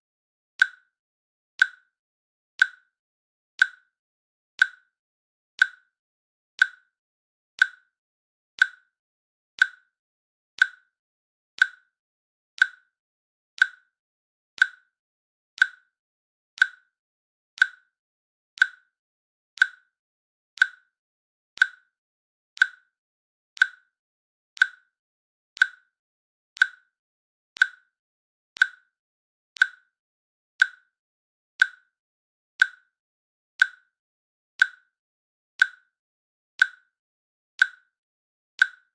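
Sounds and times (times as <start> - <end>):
timer clicking: 0.6 - 0.9, 1.6 - 1.9, 2.6 - 2.9, 3.6 - 3.9, 4.6 - 4.9, 5.6 - 6.0, 6.6 - 7.0, 7.6 - 8.0, 8.6 - 9.0, 9.6 - 10.0, 10.6 - 11.0, 11.6 - 12.0, 12.6 - 13.0, 13.6 - 14.0, 14.6 - 15.0, 15.6 - 16.0, 16.6 - 17.0, 17.6 - 18.0, 18.6 - 19.0, 19.6 - 20.0, 20.6 - 21.0, 21.6 - 22.0, 22.6 - 23.0, 23.6 - 24.0, 24.6 - 25.0, 25.6 - 26.0, 26.6 - 27.0, 27.6 - 28.0, 28.6 - 29.0, 29.6 - 30.0, 30.6 - 31.0, 31.6 - 32.0, 32.6 - 33.0, 33.6 - 34.0, 34.6 - 35.0, 35.6 - 36.0, 36.6 - 36.9, 37.6 - 37.9, 38.6 - 38.9.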